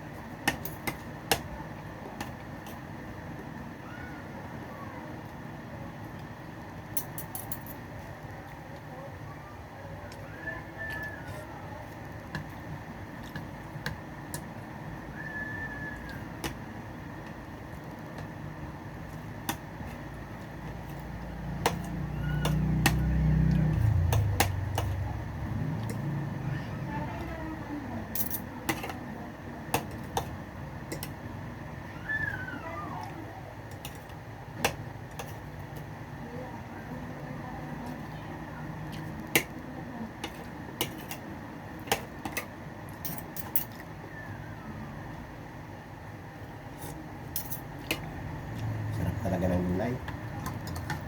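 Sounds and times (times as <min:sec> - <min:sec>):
steady background noise: 0:00.0 - 0:51.0
vehicle engine passing: 0:21.2 - 0:28.0.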